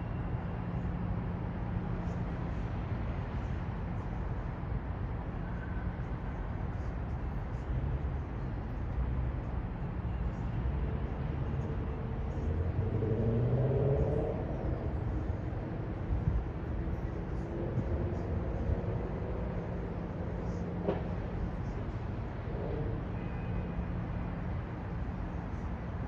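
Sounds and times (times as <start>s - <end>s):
low rumble of traffic: 0.0s - 26.0s
passing vehicle engine: 12.1s - 23.0s.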